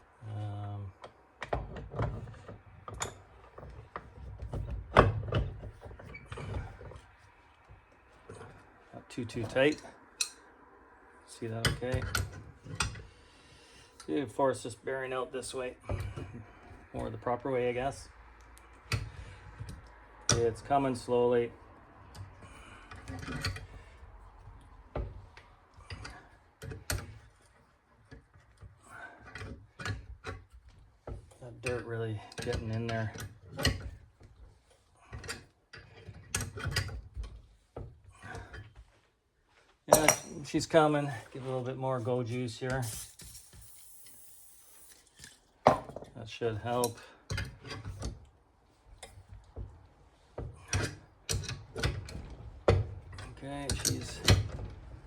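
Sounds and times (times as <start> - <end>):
metal parts clunking in a vise: 39.9 - 40.4.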